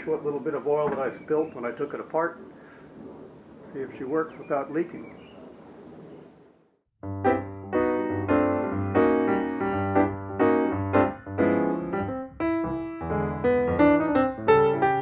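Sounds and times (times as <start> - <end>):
keyboard playing chords: 7.0 - 15.0
steady bass line: 7.0 - 15.0.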